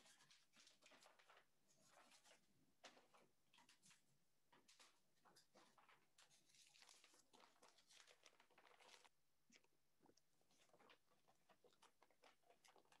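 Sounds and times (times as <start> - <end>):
paper rustling: 0.0 - 9.1.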